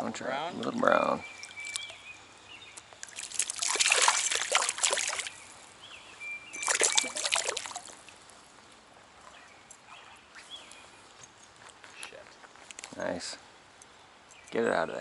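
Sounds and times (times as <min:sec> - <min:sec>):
fish splashing at water surface: 0:03.0 - 0:05.4, 0:06.6 - 0:08.2.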